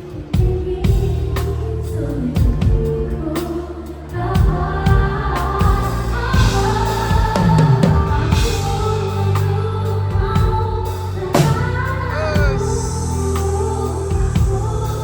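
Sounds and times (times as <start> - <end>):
pop band playing: 0.0 - 15.0
person singing: 6.6 - 15.0.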